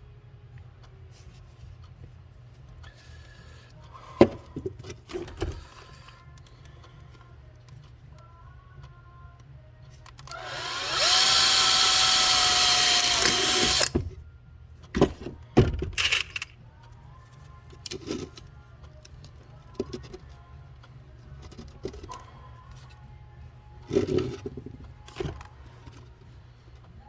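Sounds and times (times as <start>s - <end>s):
power drill drilling plastic: 10.3s - 14.0s.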